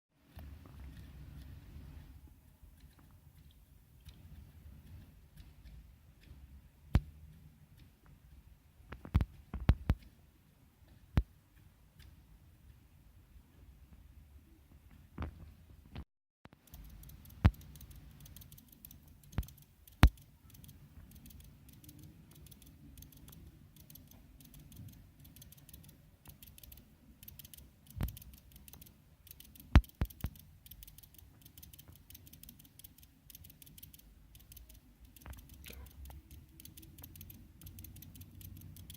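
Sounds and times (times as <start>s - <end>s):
faint high-pitched ticking: 16.5s - 38.9s
sharp clicks: 16.5s - 38.9s.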